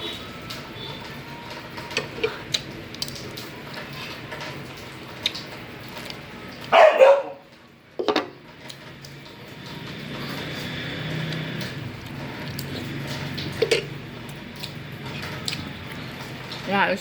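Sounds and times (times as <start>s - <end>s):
dog barking: 6.7s - 7.5s.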